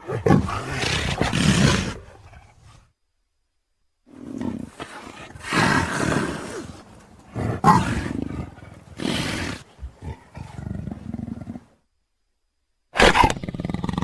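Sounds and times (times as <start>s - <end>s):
big cat roars: 0.0s - 2.6s, 4.1s - 11.7s.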